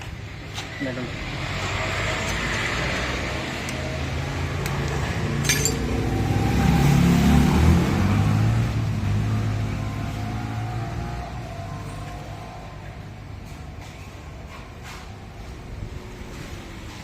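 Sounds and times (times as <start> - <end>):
vehicle engine passing by: 0.8 - 17.0
metallic clink: 5.4 - 6.0.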